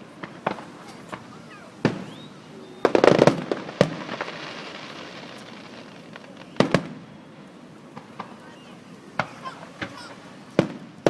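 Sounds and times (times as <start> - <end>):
fireworks bangs: 0.0 - 11.0.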